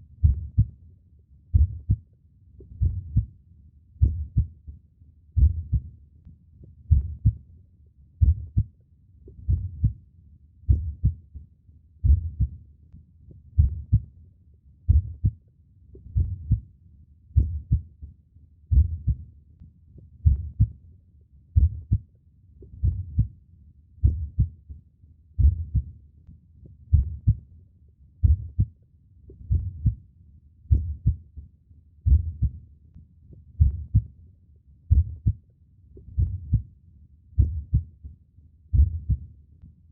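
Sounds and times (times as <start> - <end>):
slow heartbeat thumps: 0.2 - 0.7, 1.5 - 2.0, 2.6 - 3.3, 4.0 - 4.6, 5.4 - 5.9, 6.8 - 7.4, 8.2 - 8.7, 9.3 - 10.0, 10.7 - 11.2, 12.0 - 12.6, 13.5 - 14.1, 14.9 - 15.4, 16.0 - 16.6, 17.4 - 17.9, 18.7 - 19.2, 20.2 - 20.7, 21.6 - 22.0, 22.7 - 23.3, 24.0 - 24.6, 25.4 - 25.9, 26.9 - 27.4, 28.2 - 28.7, 29.3 - 30.0, 30.7 - 31.3, 32.0 - 32.6, 33.6 - 34.1, 34.9 - 35.4, 36.0 - 36.7, 37.4 - 37.9, 38.7 - 39.3.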